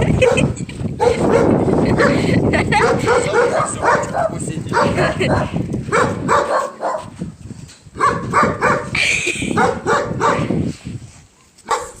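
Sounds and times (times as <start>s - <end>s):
dog barking: 0.2s - 7.2s, 8.0s - 8.9s, 9.6s - 10.5s, 11.6s - 12.0s.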